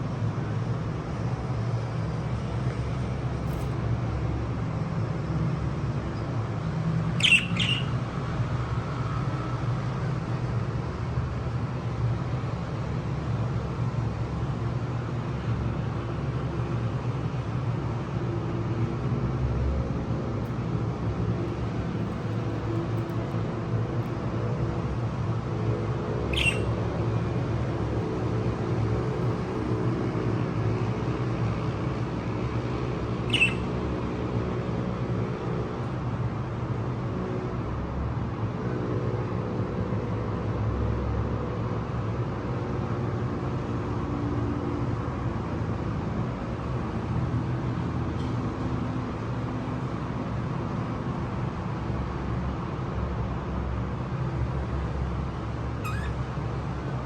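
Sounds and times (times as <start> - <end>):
low mechanical hum: 0.0 - 38.6, 39.2 - 57.0
budgerigar chirps: 7.2 - 8.0, 26.3 - 26.8, 33.3 - 33.8, 55.8 - 56.3.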